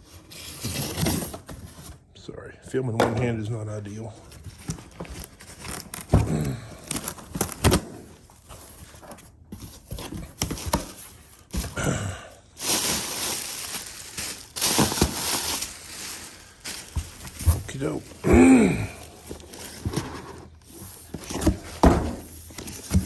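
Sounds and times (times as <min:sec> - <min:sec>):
packaging rustling and tearing: 0:04.4 - 0:11.8, 0:12.5 - 0:23.0
packaging knocking and clattering: 0:12.6 - 0:18.2.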